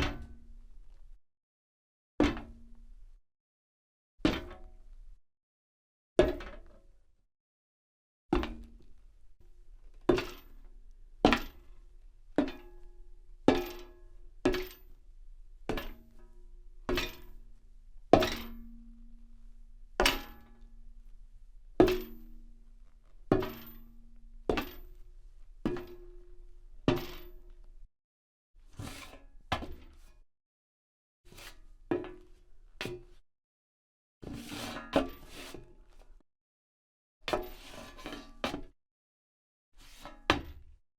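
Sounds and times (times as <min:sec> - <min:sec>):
footsteps on metal grate: 0:25.7 - 0:26.0.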